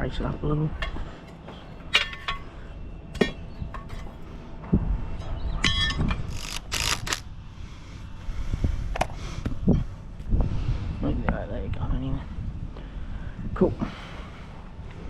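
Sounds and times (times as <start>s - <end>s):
metal clinks and knocks: 0.8s - 4.3s.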